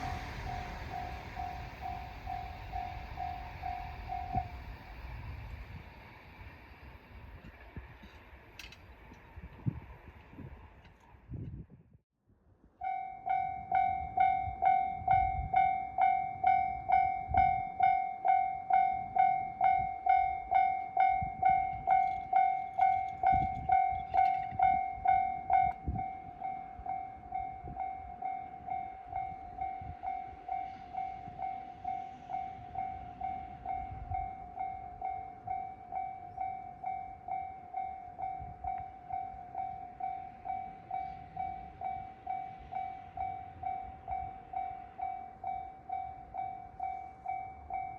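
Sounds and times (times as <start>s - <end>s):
level crossing bell ringing: 12.8s - 47.9s.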